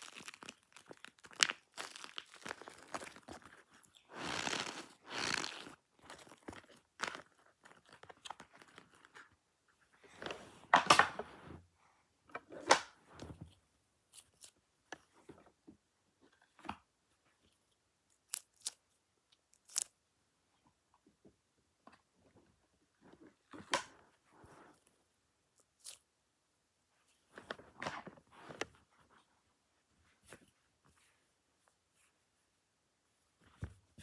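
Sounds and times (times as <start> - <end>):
rustling and crinkling: 0.0 - 9.4, 13.1 - 15.5, 23.0 - 26.1.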